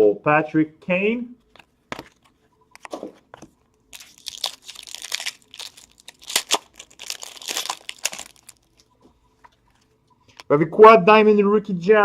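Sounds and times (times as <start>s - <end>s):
card pack wrapper crinkling and tearing: 3.9s - 8.8s.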